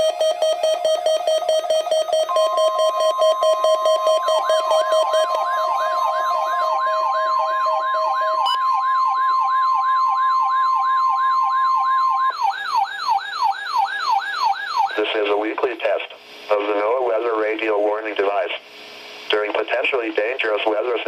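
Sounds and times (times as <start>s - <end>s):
fast-pulsing beep: 0.0s - 12.6s
steady alert tone: 2.3s - 12.3s.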